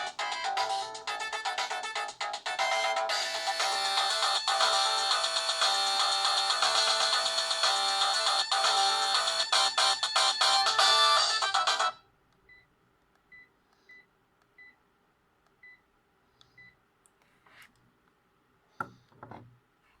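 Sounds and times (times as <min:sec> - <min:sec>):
mobile phone ringtone: 0:02.5 - 0:12.0.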